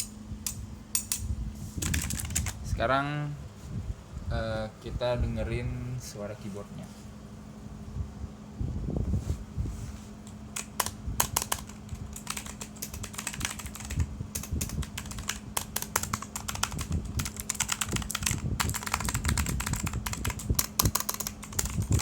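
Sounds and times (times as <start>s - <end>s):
clicky mechanical keyboard typing: 1.8s - 2.6s, 10.6s - 22.0s.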